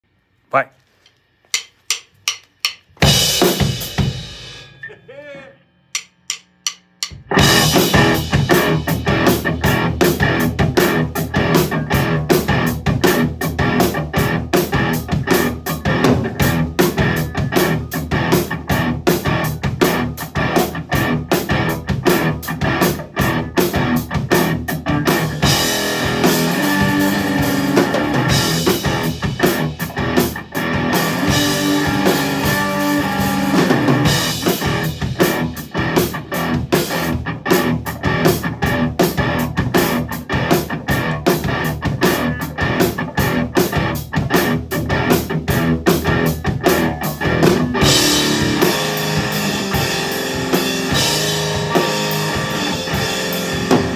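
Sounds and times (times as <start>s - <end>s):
guitar and drum kit music: 1.0s - 5.0s, 6.0s - 53.9s.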